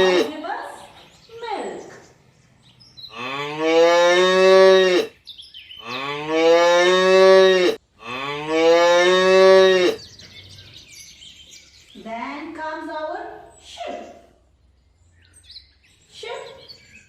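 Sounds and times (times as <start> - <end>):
cow mooing: 0.0 - 0.4, 3.1 - 5.1, 5.8 - 10.0.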